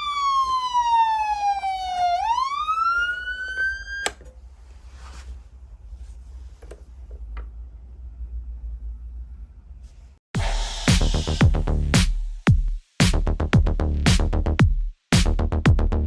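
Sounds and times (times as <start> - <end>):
electronic siren tone sweeping up: 0.0 - 4.1
click: 4.0 - 4.4.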